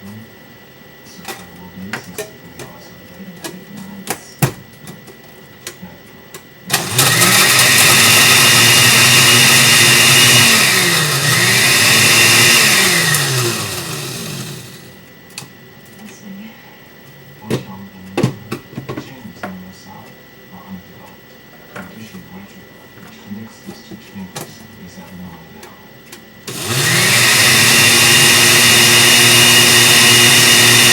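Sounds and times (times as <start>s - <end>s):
blender motor grinding crackers: 6.7s - 14.9s, 26.5s - 30.9s.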